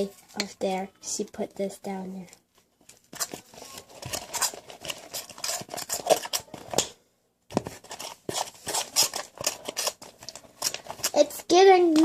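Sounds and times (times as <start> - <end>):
utensil scraping bowl: 7.8 - 11.2.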